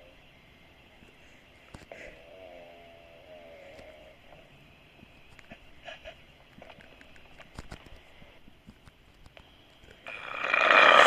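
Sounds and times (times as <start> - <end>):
faint breathing: 1.1 - 2.4
person snoring loudly: 10.1 - 11.0.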